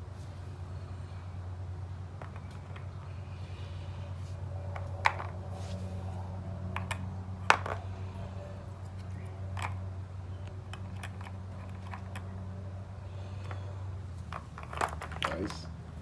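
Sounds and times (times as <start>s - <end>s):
checkers pieces clicking on board: 14.3s - 15.7s.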